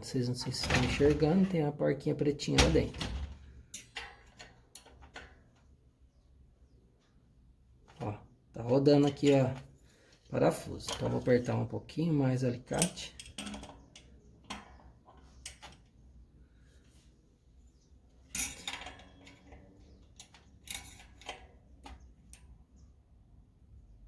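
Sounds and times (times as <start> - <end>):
pliers clicking on metal parts: 12.7 - 14.8
clinking metal scrapes: 18.3 - 19.6.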